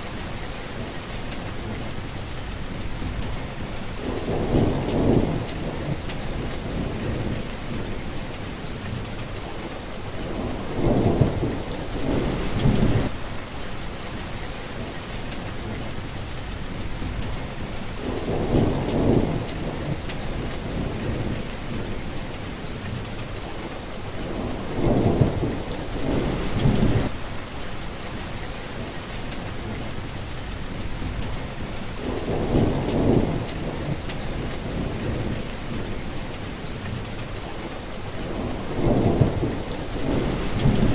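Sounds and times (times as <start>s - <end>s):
rain falling on plants: 0.0s - 40.9s.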